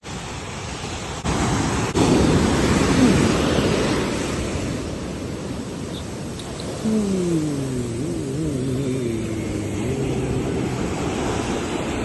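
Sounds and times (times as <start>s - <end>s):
ocean waves breaking on beach: 0.0s - 12.0s.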